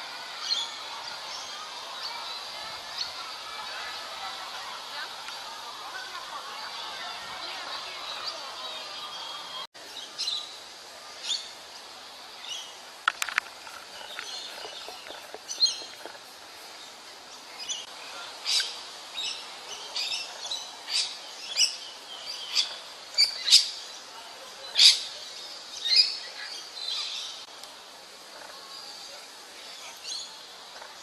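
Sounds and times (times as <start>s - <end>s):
steady background hiss: 0.0s - 31.0s
birds chirping: 12.4s - 17.9s.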